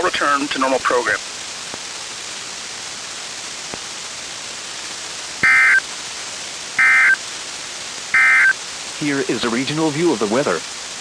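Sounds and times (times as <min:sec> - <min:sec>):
radio background hiss: 0:00.0 - 0:01.8, 0:05.4 - 0:06.0, 0:06.8 - 0:07.5, 0:08.1 - 0:10.7
digital data tone bursts: 0:05.4 - 0:05.8, 0:06.8 - 0:07.2, 0:08.2 - 0:08.6.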